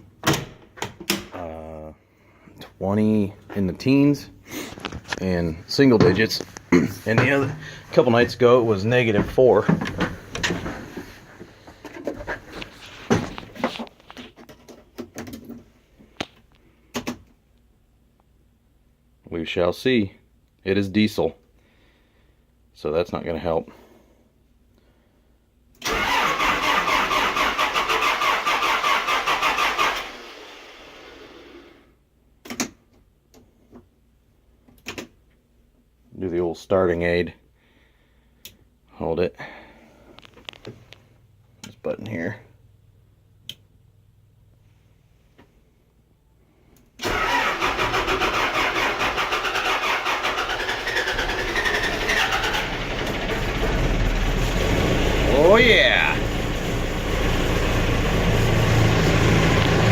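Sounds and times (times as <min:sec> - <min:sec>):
diesel engine cranking: 0:07.0 - 0:11.2, 0:25.8 - 0:31.1, 0:47.0 - 0:59.9.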